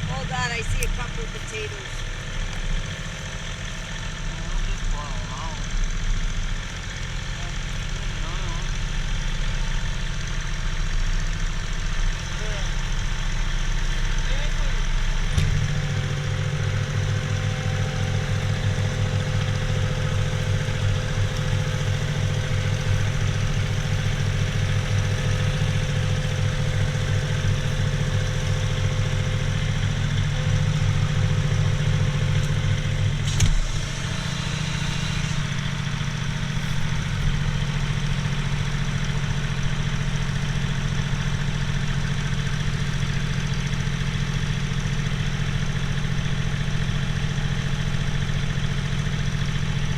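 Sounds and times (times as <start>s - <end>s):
tractor diesel engine running: 0.0s - 49.9s.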